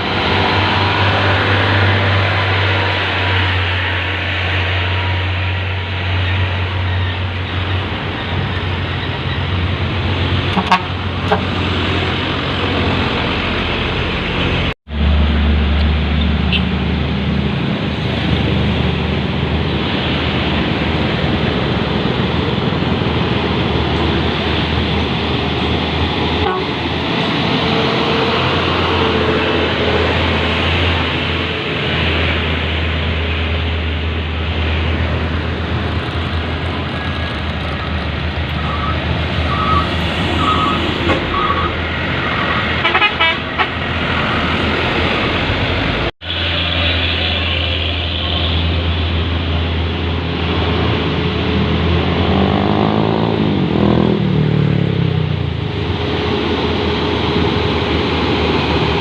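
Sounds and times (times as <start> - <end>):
diesel truck engine droning: 0.0 - 59.0
truck horn toots: 10.5 - 11.6, 26.4 - 26.8, 42.7 - 43.9.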